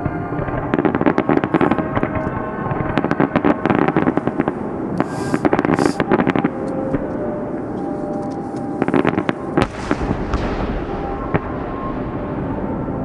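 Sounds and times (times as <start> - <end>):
fireworks crackling: 0.0 - 6.9, 8.7 - 12.4
short hissing bursts: 5.0 - 6.0.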